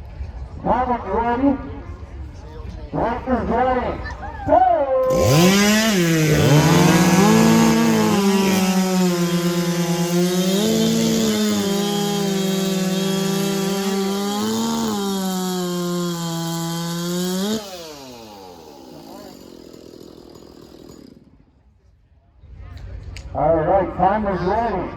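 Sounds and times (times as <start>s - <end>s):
chainsaw cutting through log: 5.0s - 21.4s.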